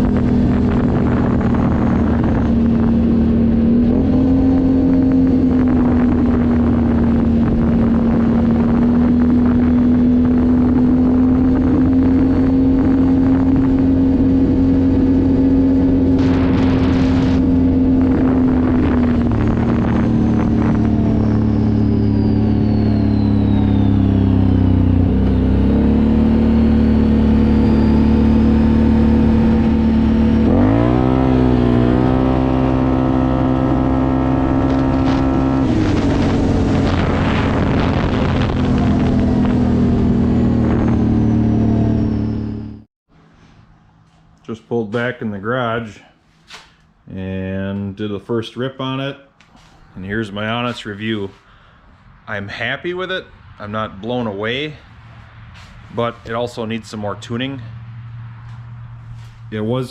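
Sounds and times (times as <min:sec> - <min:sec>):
atv engine running hard: 0:00.0 - 0:42.8.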